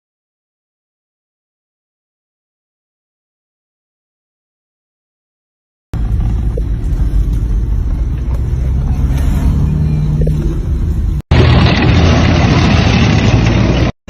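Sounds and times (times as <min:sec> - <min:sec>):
vehicle engine rumbling: 0:06.0 - 0:14.0.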